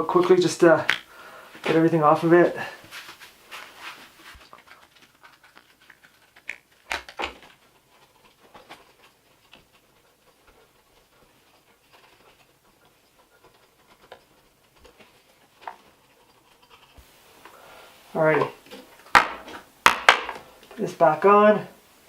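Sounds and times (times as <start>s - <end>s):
hands scraping plastic housing: 3.5s - 10.6s
sharp knocks: 19.1s - 20.4s.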